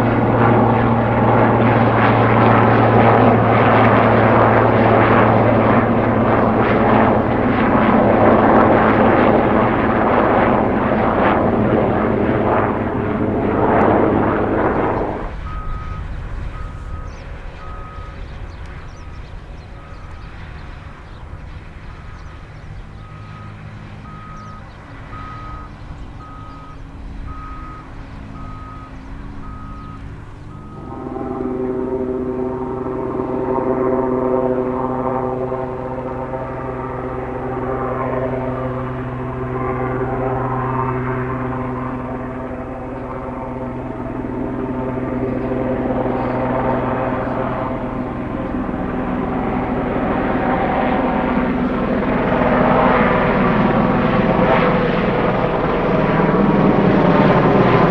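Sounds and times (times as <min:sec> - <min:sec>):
helicopter rotor and engine: 0:00.0 - 0:57.9
steady engine hum: 0:00.0 - 0:57.9
reversing alarm beeping: 0:13.8 - 0:20.8, 0:22.0 - 0:33.4.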